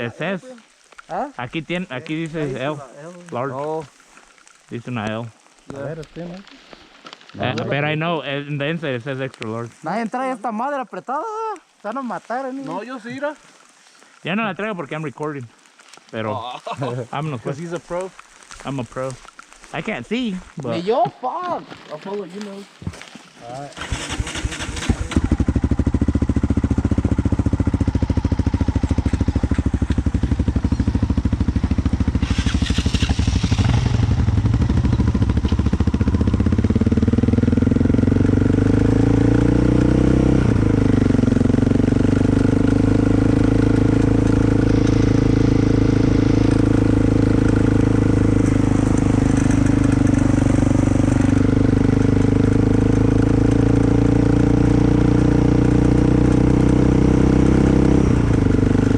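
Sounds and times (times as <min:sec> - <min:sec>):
off-road vehicle engine running: 0:23.7 - 0:58.9
short hiss: 0:32.2 - 0:34.0.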